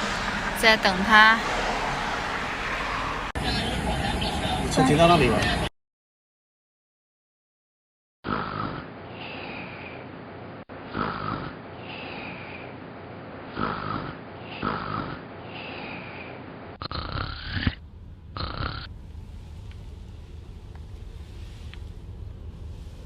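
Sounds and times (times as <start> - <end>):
person snoring: 8.3 - 8.9, 10.9 - 12.4, 13.6 - 16.1, 16.8 - 17.8
car cabin rumble: 17.4 - 23.0.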